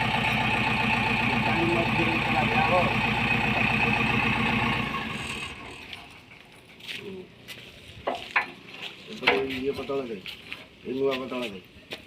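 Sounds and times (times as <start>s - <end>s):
diesel engine idling: 0.0s - 7.4s.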